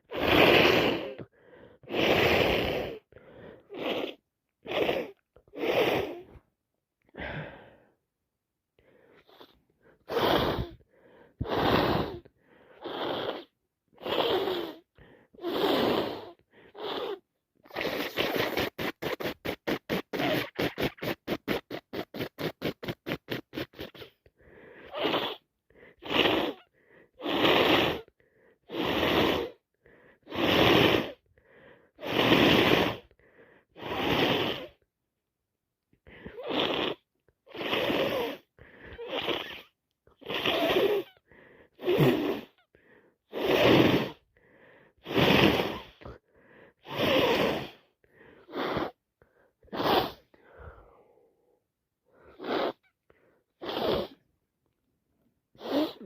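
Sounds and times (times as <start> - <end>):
person sniffing: 0.0 - 6.4, 8.8 - 34.8, 36.0 - 54.3, 55.6 - 56.0
heavy breathing: 0.0 - 8.0, 8.8 - 20.9, 23.2 - 27.2, 28.0 - 28.7, 29.5 - 30.3, 31.1 - 32.1, 33.0 - 33.8, 36.0 - 36.5, 37.9 - 39.2, 40.1 - 45.1, 45.7 - 54.2
quick sniffs or gasps: 8.8 - 34.8, 36.0 - 54.3, 55.6 - 56.0
person sneezing: 15.4 - 24.2, 49.7 - 50.6, 52.3 - 52.8, 53.6 - 54.2, 55.6 - 56.0.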